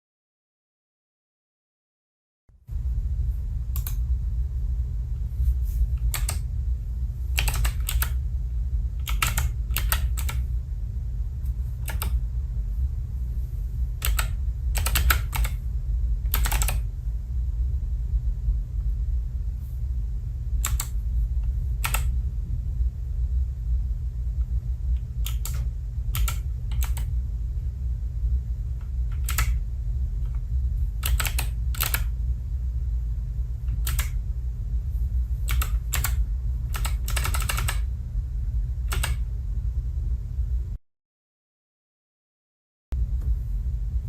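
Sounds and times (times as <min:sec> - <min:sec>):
steady low hum: 0:02.5 - 0:40.8, 0:42.9 - 0:44.0
keypad keys clicking: 0:06.0 - 0:06.5, 0:07.4 - 0:08.2, 0:09.0 - 0:10.4, 0:11.8 - 0:12.2, 0:14.0 - 0:15.6, 0:16.3 - 0:16.9, 0:20.6 - 0:21.0, 0:21.8 - 0:22.1, 0:25.2 - 0:27.1, 0:29.1 - 0:29.6, 0:31.0 - 0:32.1, 0:33.7 - 0:34.2, 0:35.5 - 0:37.9, 0:38.9 - 0:39.2.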